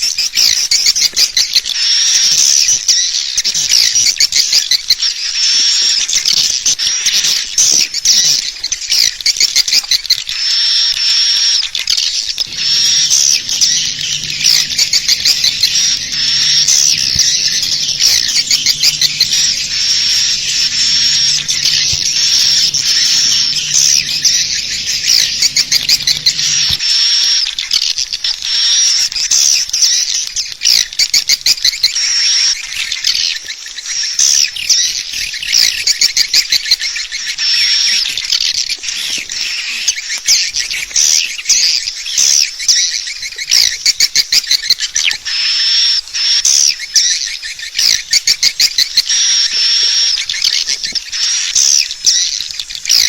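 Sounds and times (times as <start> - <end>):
high chirping bird calls: 0.0 - 53.0
low hum: 12.4 - 26.8.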